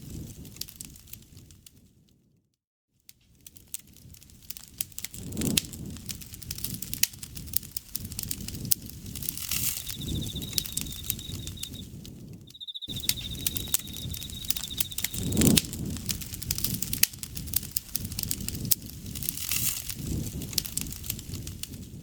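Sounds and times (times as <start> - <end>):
campfire crackling and popping: 3.3 - 22.0
insect trilling: 9.2 - 11.9, 12.5 - 15.6.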